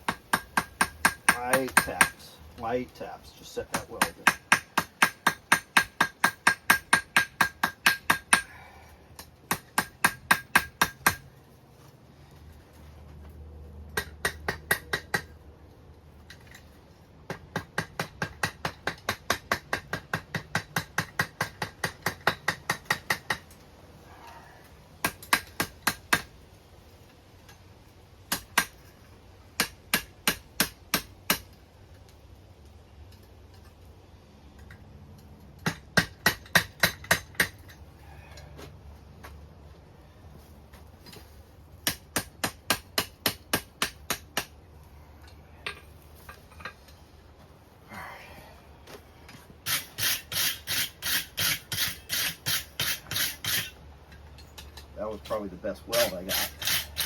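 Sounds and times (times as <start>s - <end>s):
hammer striking metal on anvil: 0.1s - 2.2s, 3.7s - 8.5s, 9.5s - 11.2s.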